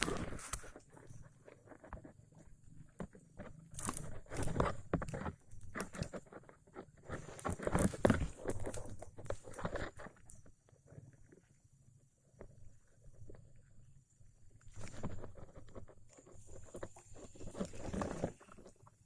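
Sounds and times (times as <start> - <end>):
crunching and rustling: 0.0 - 11.6, 14.5 - 19.0.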